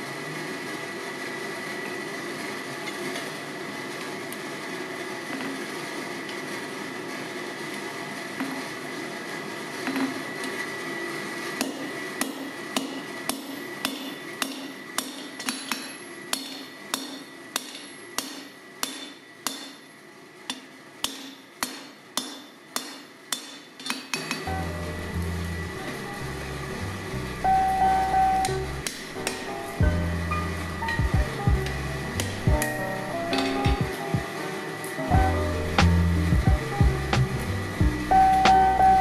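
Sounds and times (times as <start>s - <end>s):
hammer striking steel on anvil: 11.6s - 19.9s, 20.5s - 24.4s, 28.4s - 29.6s
music: 24.5s - 39.0s.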